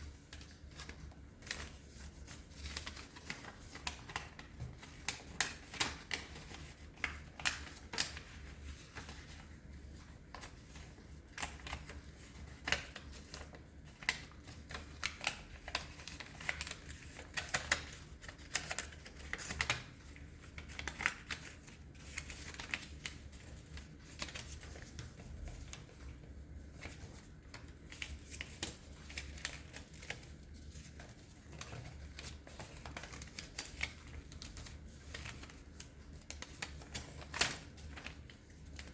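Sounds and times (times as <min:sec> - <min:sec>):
paper crackling and rustling: 0:00.0 - 0:38.9.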